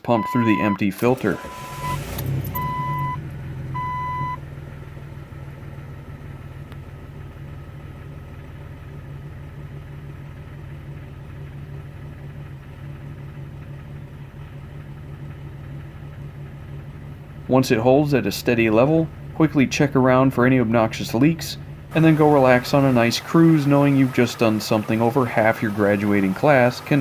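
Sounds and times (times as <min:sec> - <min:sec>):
high beep: 0:00.0 - 0:02.0, 0:02.6 - 0:03.2, 0:03.8 - 0:04.4
car engine idling: 0:00.0 - 0:27.0.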